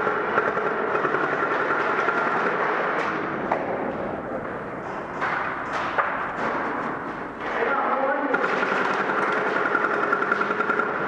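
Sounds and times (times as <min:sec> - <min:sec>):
indoor arena din: 0:00.0 - 0:11.0
airsoft guns firing: 0:05.2 - 0:11.0.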